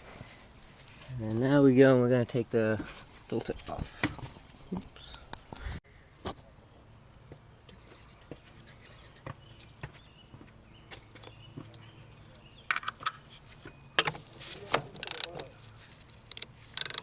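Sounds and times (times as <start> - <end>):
metal tools clinking: 12.7 - 15.5.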